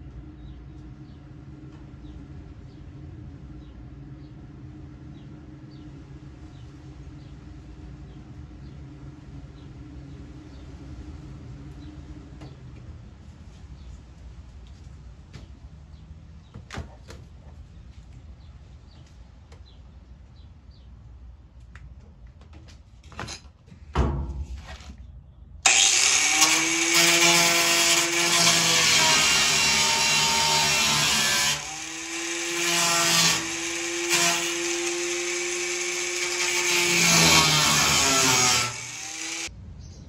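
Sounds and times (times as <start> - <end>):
thump: 23.9 - 24.8
angle grinder motor whine: 25.7 - 39.5.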